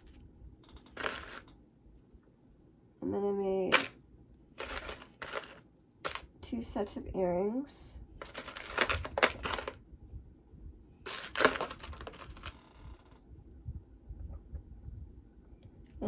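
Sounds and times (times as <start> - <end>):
jewelry rustling and clicking: 0.0 - 6.3, 8.2 - 9.8, 11.1 - 13.2.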